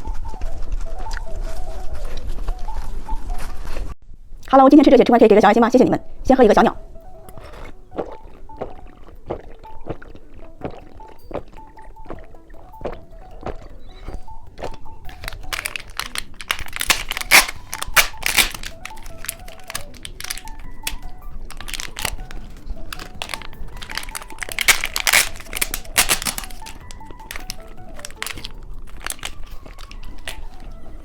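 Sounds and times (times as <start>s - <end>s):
soft background music: 0.0s - 31.0s
plastic packaging crinkling: 14.0s - 31.0s.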